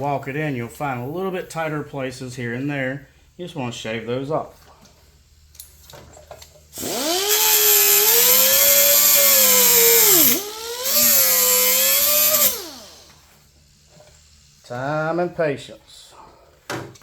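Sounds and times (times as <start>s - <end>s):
power tool grinding steel: 6.8s - 13.1s.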